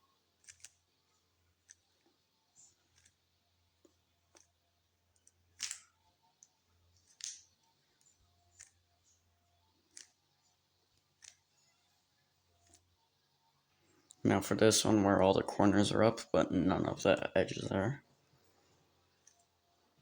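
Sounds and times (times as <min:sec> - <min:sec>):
plastic cube layers clicking: 0:00.4 - 0:00.9, 0:05.2 - 0:07.7.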